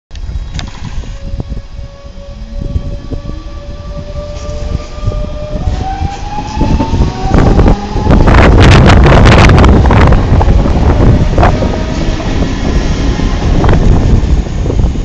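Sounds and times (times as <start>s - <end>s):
train running rumble: 0.1s - 15.0s
electric train whine: 0.2s - 15.0s.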